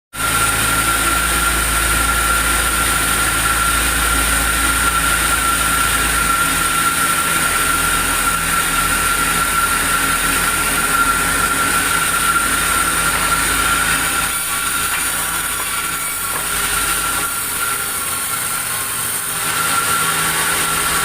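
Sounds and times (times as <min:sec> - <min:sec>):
sawmill saw whining: 0:00.2 - 0:21.0.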